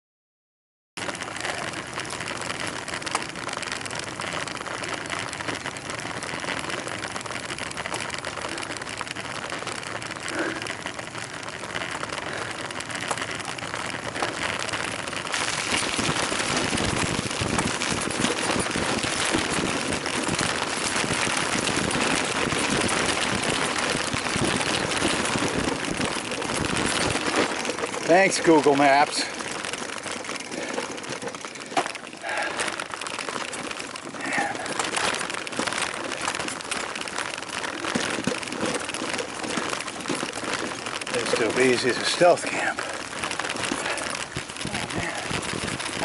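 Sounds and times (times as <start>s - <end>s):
bicycle tyres rolling over gravel: 1.0s - 46.0s.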